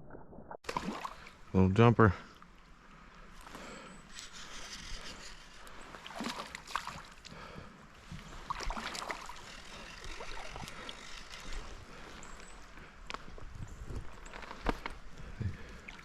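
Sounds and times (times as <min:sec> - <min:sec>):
creek water splashing: 0:00.6 - 0:12.9, 0:14.2 - 0:16.0
faint hiss of stream: 0:00.7 - 0:12.4.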